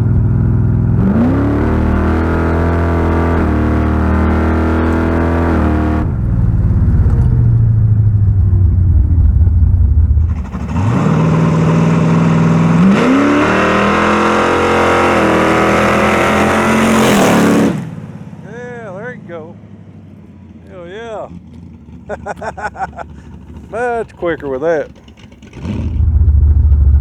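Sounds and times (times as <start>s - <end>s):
car engine accelerating hard: 0.0s - 27.0s.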